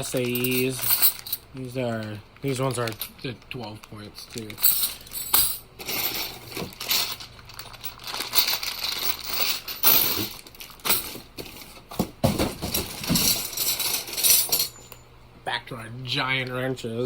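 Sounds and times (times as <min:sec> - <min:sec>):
plastic packaging crinkling: 0:06.5 - 0:11.9.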